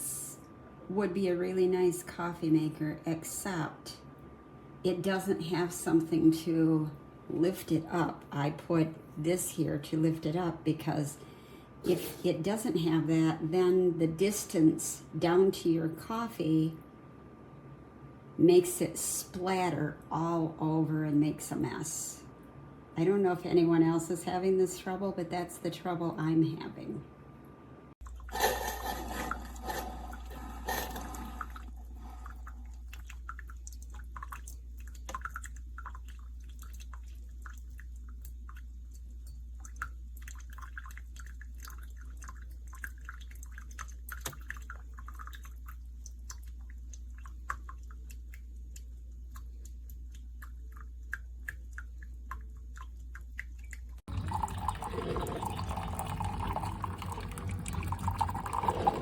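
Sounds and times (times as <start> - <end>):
low steady hum: 0.0 - 59.0
liquid pouring: 28.0 - 59.0
coffee dripping into cup: 29.1 - 59.0.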